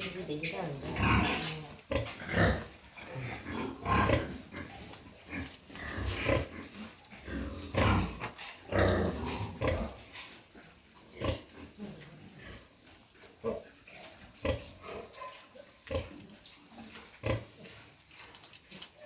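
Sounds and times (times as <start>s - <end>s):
pigs grunting: 0.0s - 10.4s, 13.4s - 17.9s.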